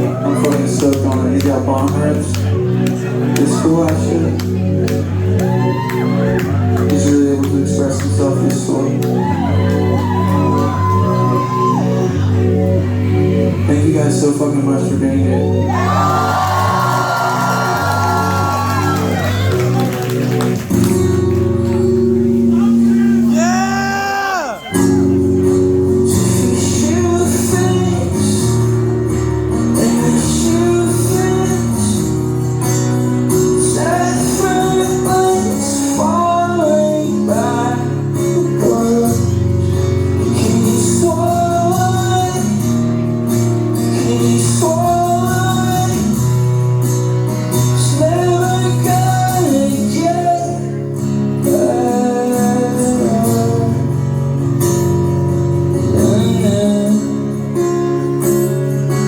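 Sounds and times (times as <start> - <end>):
live rock band playing: 0.0 - 59.0
person singing: 22.7 - 25.3, 26.2 - 32.2, 33.3 - 42.9, 43.8 - 46.2, 47.7 - 54.0, 55.7 - 57.8.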